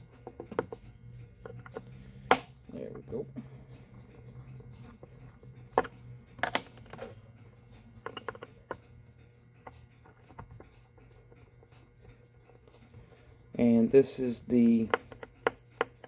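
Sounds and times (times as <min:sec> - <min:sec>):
steady low hum: 0:00.0 - 0:16.0
metal tools clicking on watch: 0:04.0 - 0:16.0.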